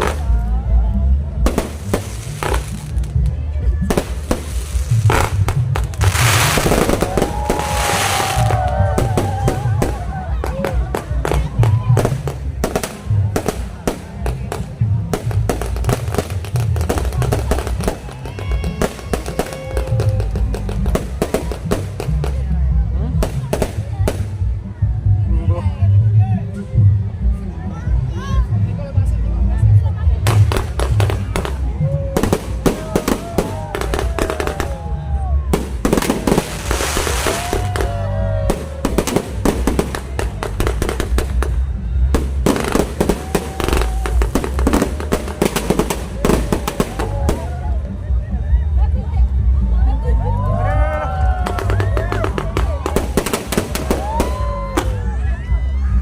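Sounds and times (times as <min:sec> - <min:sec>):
fireworks bangs and crackles: 0:00.0 - 0:24.6, 0:30.1 - 0:47.9, 0:51.2 - 0:55.3
loud music with heavy bass: 0:01.2 - 0:23.8
fireworks hissing rush: 0:01.4 - 0:22.3, 0:35.5 - 0:41.6, 0:42.2 - 0:47.5.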